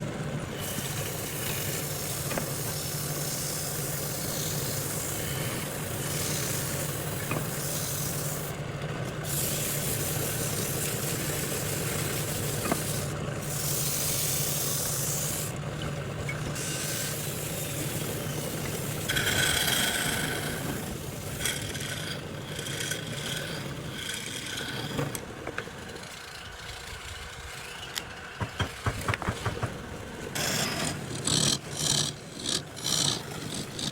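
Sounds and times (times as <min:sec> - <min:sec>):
power tool motor running: 0:16.6 - 0:25.2
rasping against wood: 0:28.4 - 0:29.8, 0:30.4 - 0:33.9.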